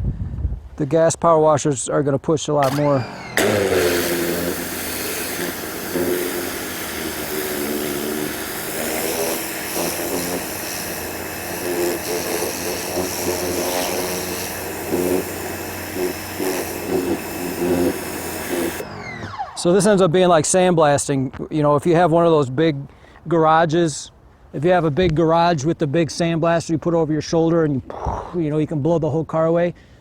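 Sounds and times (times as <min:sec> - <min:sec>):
pressure washer water hiss: 0:02.6 - 0:18.8
electric motor and pump hum: 0:02.6 - 0:20.6.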